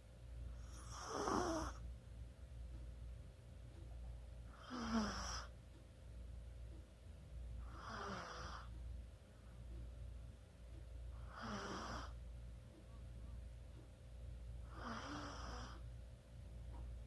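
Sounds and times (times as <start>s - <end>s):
small dog snoring: 0.6s - 1.8s, 4.5s - 5.5s, 7.6s - 8.7s, 11.2s - 12.2s, 14.6s - 15.8s.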